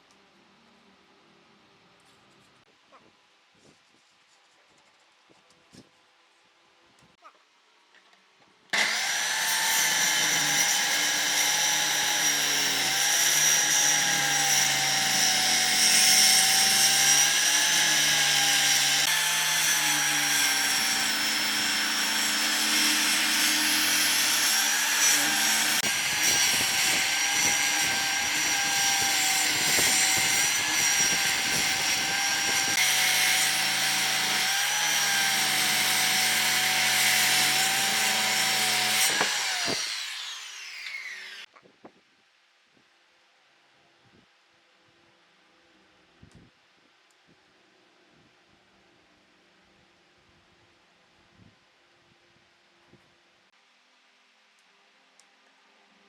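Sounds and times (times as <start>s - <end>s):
power tool whining on wood: 8.8s - 41.5s.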